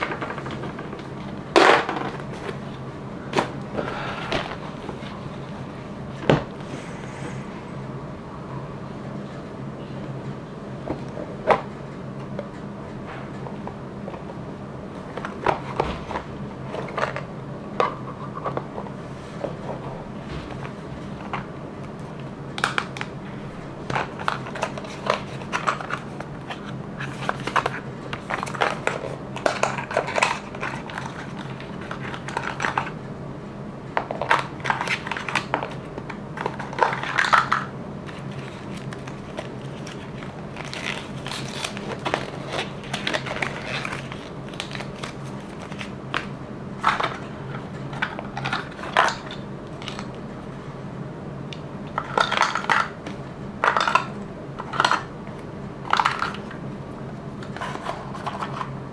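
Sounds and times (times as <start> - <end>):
steady low hum: 0.0 - 58.9
packaging crinkling: 34.2 - 50.2.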